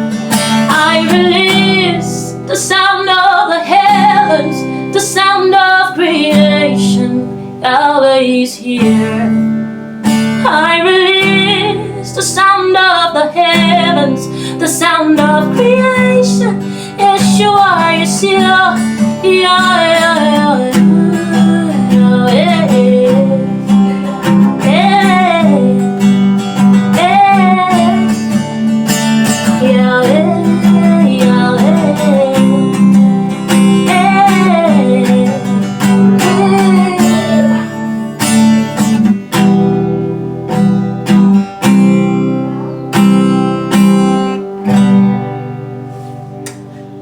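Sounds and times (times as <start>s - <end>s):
acoustic guitar strumming: 0.0s - 47.0s
person singing wordless melody: 0.7s - 9.5s, 10.5s - 28.6s, 29.3s - 38.1s.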